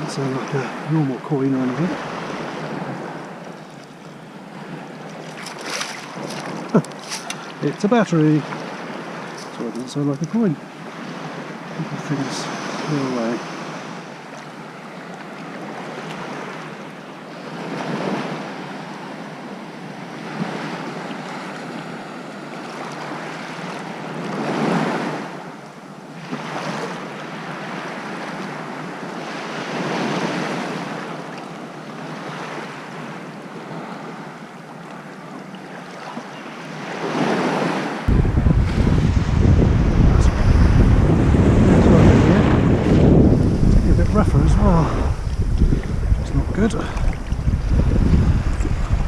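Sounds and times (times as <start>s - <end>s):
sea waves breaking on shore: 0.0s - 49.0s
wind: 0.0s - 49.0s
wind buffeting microphone: 38.0s - 49.0s.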